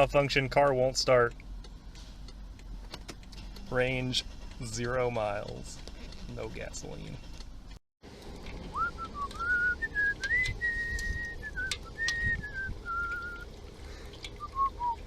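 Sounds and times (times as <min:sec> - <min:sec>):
person whistling a slow tune: 0:08.7 - 0:13.5, 0:14.4 - 0:15.0.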